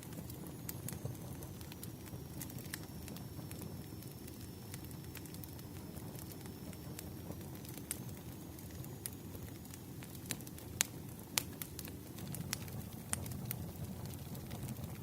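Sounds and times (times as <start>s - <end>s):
wood fire crackling: 0.0s - 15.0s
low steady rumble: 4.2s - 15.0s.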